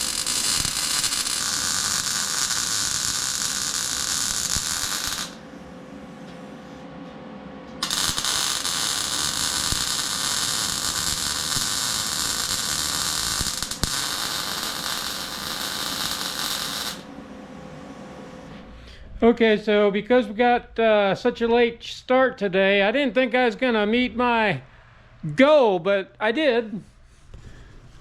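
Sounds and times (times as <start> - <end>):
welding arc sizzling: 0.0 - 5.4, 7.8 - 17.1
faint steady hum: 0.0 - 28.0.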